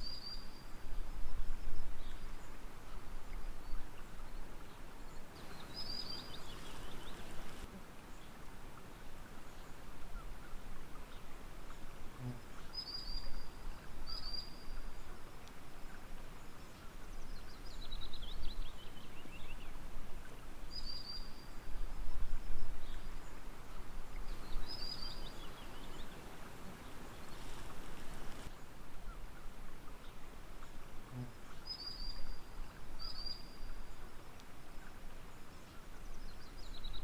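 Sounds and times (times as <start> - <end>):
calm water: 0.0 - 37.0
birds chirping: 5.2 - 7.7, 24.2 - 28.5.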